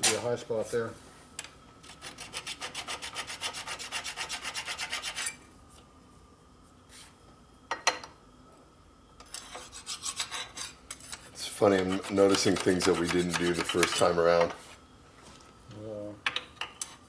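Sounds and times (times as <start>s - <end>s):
file scraping metal: 1.9s - 5.4s, 9.4s - 14.2s.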